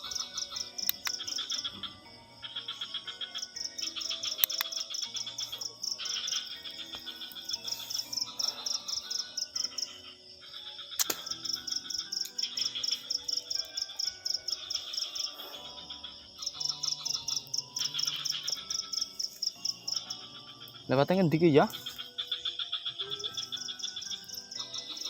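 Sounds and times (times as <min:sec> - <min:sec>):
crickets chirping: 0:00.0 - 0:25.0
sharp click: 0:11.0 - 0:11.4.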